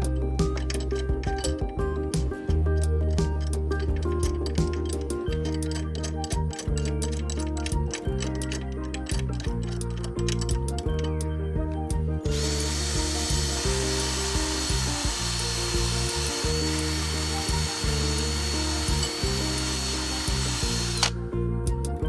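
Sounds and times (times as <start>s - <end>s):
background music: 0.0s - 22.0s
power tool whining: 12.3s - 21.2s.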